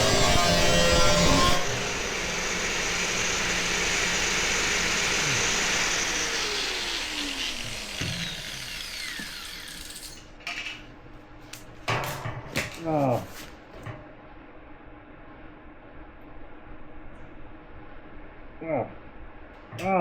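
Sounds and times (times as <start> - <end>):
power tool cutting steel: 0.0 - 10.3.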